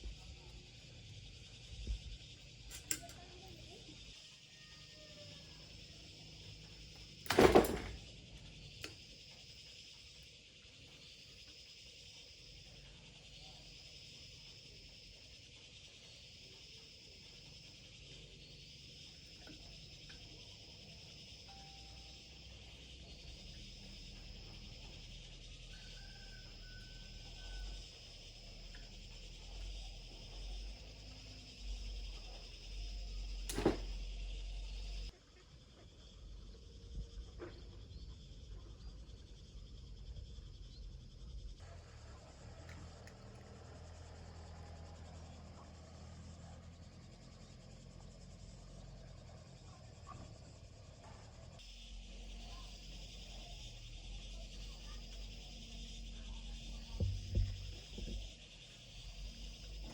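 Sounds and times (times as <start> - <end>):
insects trilling: 0.0 - 59.9
small click: 2.7 - 3.2
loud sharp knock: 57.0 - 58.3.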